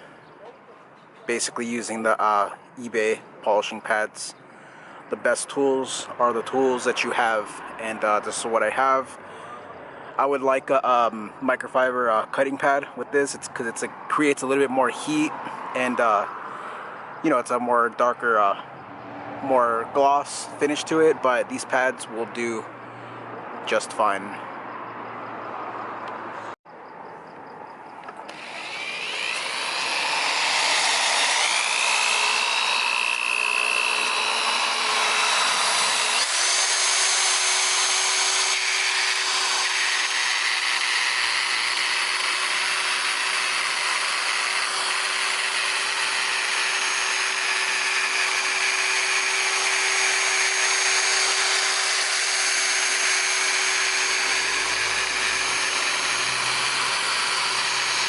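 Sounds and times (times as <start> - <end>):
electric polisher motor: 28.3 - 58.0.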